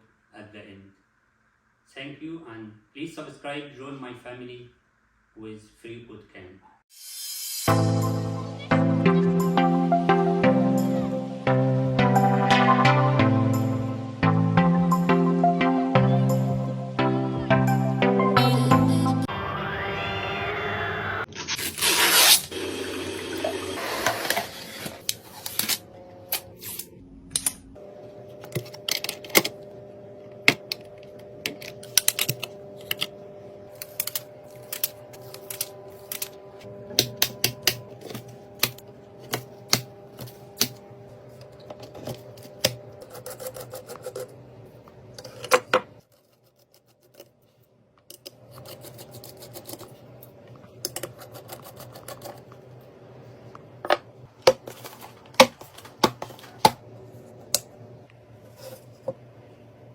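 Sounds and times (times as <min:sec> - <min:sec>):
faint steady hum: 0:25.0 - 0:45.9
computer hardware clicks and rattles: 0:30.4 - 0:33.1.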